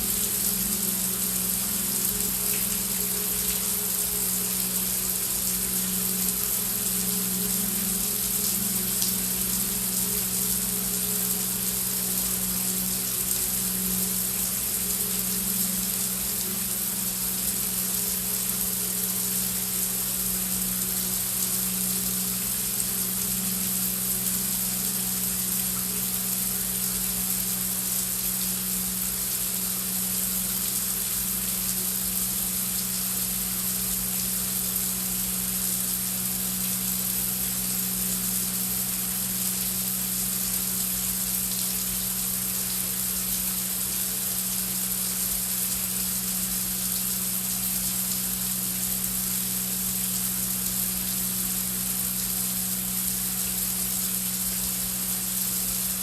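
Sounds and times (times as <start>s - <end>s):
low drone: 0.0s - 17.2s
heavy rain hiss: 0.0s - 56.0s.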